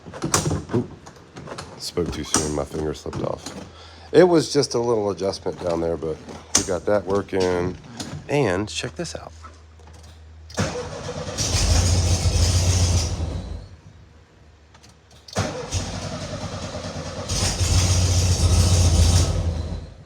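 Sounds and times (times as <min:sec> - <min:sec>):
starter cranking car engine: 0:10.5 - 0:13.7, 0:15.2 - 0:20.0.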